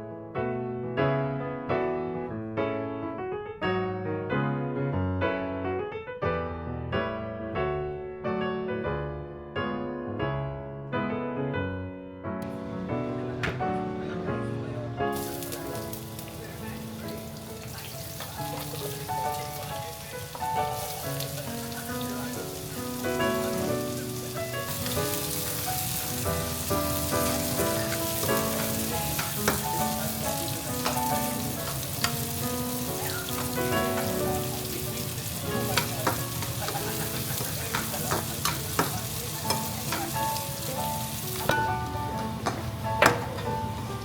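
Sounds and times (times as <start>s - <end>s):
soft background music: 11.7s - 44.0s
food sizzling in a frying pan: 12.4s - 44.0s.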